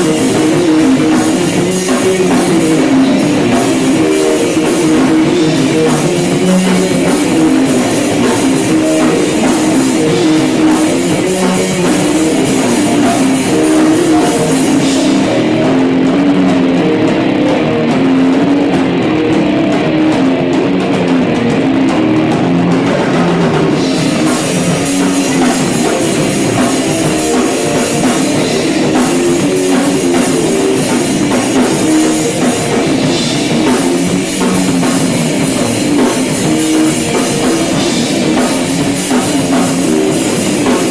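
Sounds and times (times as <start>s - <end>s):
rock-funk band playing: 0.0s - 40.9s.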